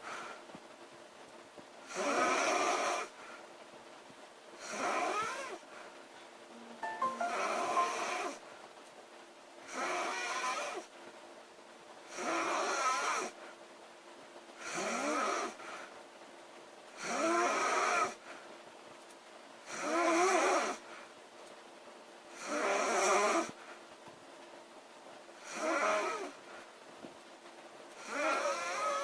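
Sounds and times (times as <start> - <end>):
woman snoring loudly: 1.9 - 3.1, 19.7 - 20.8, 22.4 - 23.5, 25.5 - 26.3, 28.0 - 29.0.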